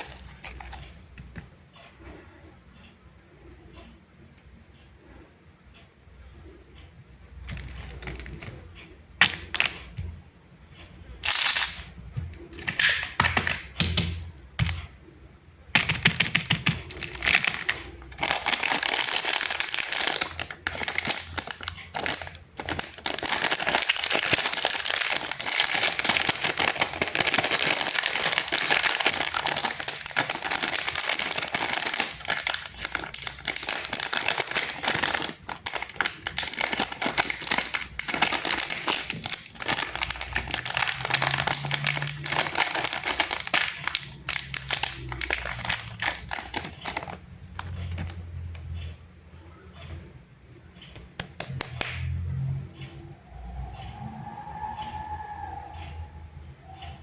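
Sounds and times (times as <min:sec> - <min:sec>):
candy wrapper crinkling: 0:00.0 - 0:01.0, 0:07.5 - 0:08.6, 0:09.2 - 0:10.0, 0:11.2 - 0:11.9, 0:15.8 - 0:48.2
packaging rustles and taps: 0:15.8 - 0:48.2.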